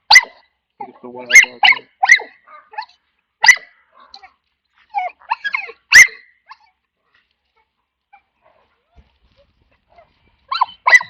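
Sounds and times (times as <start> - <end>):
dog barking: 0.0 - 4.3, 5.0 - 6.7, 9.8 - 11.0.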